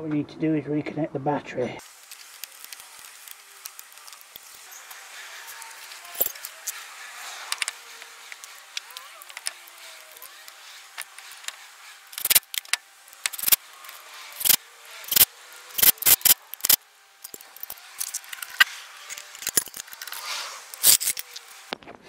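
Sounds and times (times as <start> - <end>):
hand tools clinking on metal: 5.5 - 6.7, 15.8 - 21.5.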